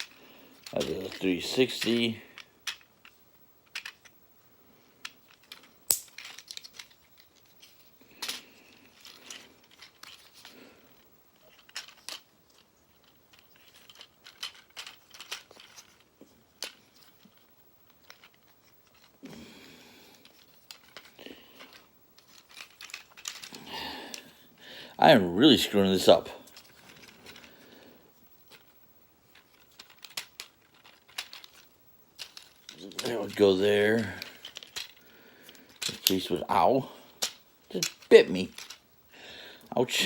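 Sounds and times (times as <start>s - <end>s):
plastic parts rustling: 0.0s - 4.2s, 4.8s - 40.0s
plastic clicks and snaps: 5.0s - 6.9s.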